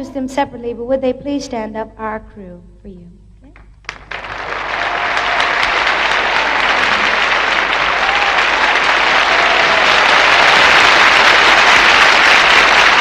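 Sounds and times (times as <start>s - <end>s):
audience applauding: 3.8s - 13.0s.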